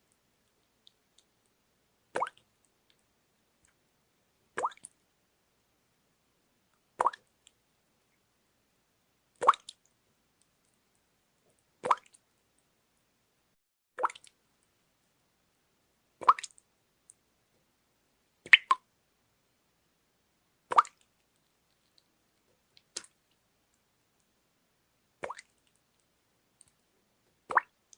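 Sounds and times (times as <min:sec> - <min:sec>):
water dripping: 0:00.0 - 0:03.8, 0:04.5 - 0:05.0, 0:06.7 - 0:07.6, 0:09.4 - 0:12.7, 0:14.0 - 0:14.8, 0:16.2 - 0:17.2, 0:18.4 - 0:18.9, 0:20.7 - 0:24.4, 0:25.2 - 0:27.9.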